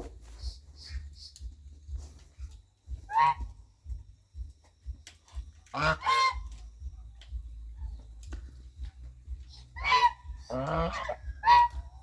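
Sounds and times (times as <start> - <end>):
goose honking: 3.1 - 3.6, 5.7 - 6.6, 9.5 - 12.0.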